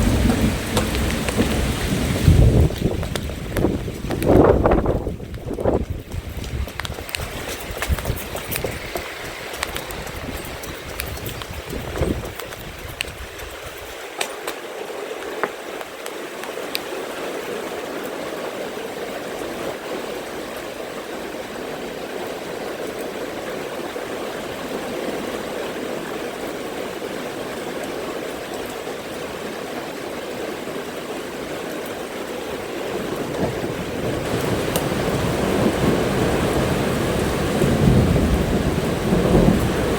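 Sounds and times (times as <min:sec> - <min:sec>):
low thunder rumble: 0:00.0 - 0:13.8, 0:32.9 - 0:39.9
steady rain falling: 0:00.0 - 0:39.9.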